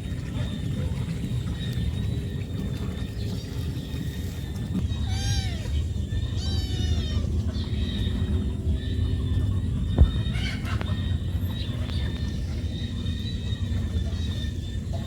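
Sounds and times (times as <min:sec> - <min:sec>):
cat meowing: 0:04.9 - 0:07.4.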